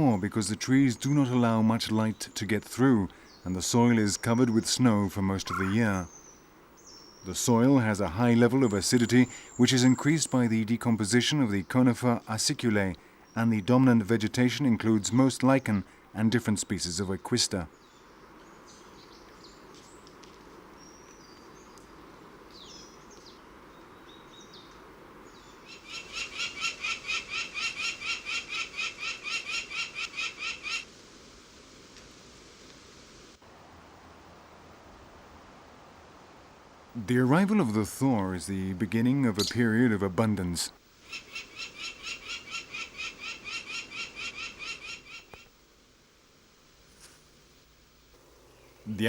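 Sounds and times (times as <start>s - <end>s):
outdoor hiss: 0.0s - 49.0s
animal calling in short notes: 5.4s - 6.0s
rapid repeated bird call notes: 8.4s - 12.3s, 17.7s - 30.9s, 41.0s - 45.5s.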